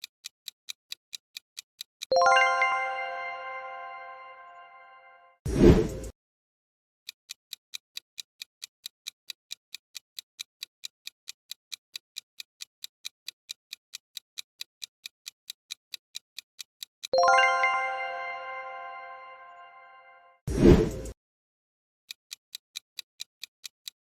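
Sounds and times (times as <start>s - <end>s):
clock-like ticking: 0.0s - 3.2s, 7.3s - 18.9s, 22.1s - 24.0s
bright bell chime: 2.1s - 5.4s, 17.2s - 20.4s.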